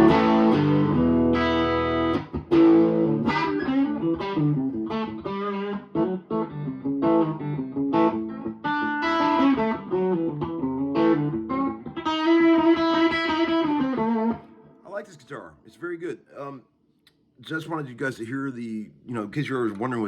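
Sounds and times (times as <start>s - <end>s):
electric guitar through amp: 0.0s - 14.7s.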